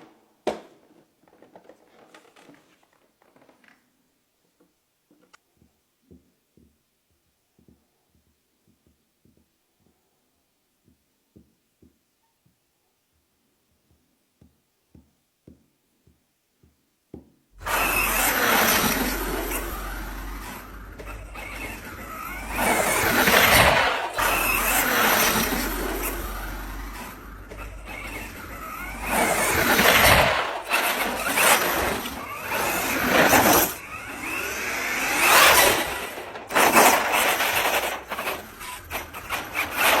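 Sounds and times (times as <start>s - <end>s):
electric motor whine revving: 17.6s - 40.0s.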